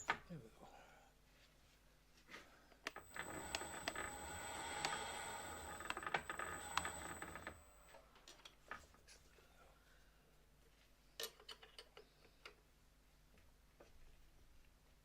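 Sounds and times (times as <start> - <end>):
electric motor humming and whining: 2.9 - 7.9.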